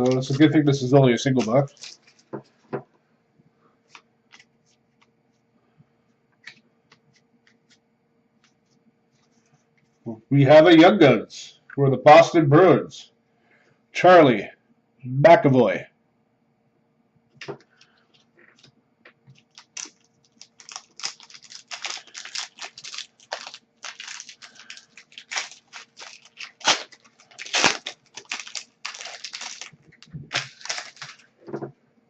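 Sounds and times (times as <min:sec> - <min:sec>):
foil wrappers crinkling and tearing: 0:00.0 - 0:02.4, 0:19.4 - 0:31.5.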